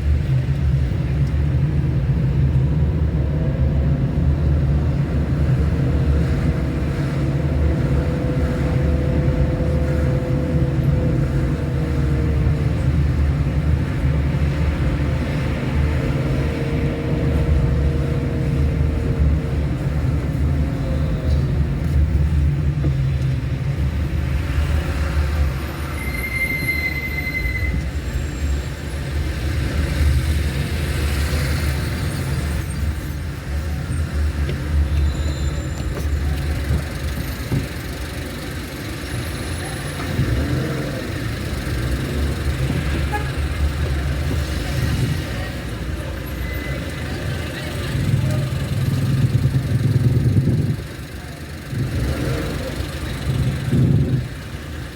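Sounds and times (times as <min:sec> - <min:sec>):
vehicle road noise: 0:00.0 - 0:54.9
high squeal: 0:25.6 - 0:28.8, 0:35.0 - 0:36.2.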